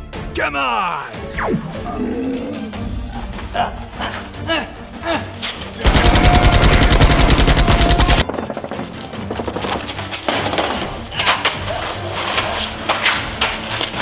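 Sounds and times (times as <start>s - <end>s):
quieter rapid gunshots: 5.9s - 9.3s
machine-gun fire: 5.9s - 9.4s.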